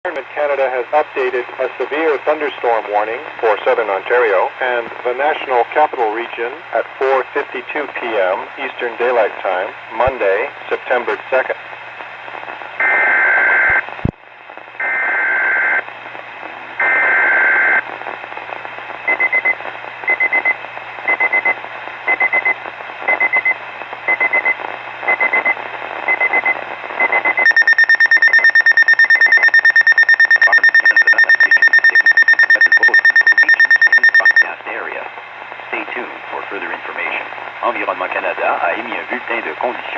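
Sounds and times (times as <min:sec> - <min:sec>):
short electronic beeps: 0:27.1 - 0:34.4.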